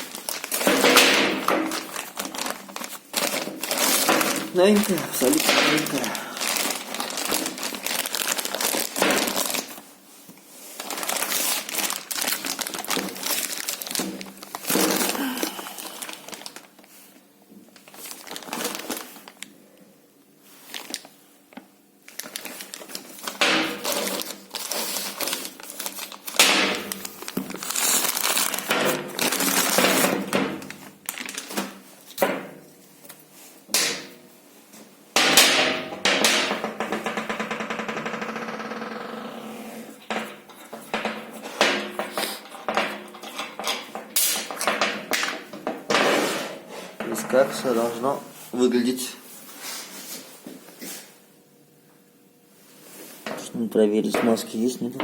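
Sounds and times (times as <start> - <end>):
packaging crinkling: 0.0 - 9.9, 10.6 - 17.1, 17.7 - 19.5, 20.5 - 32.2.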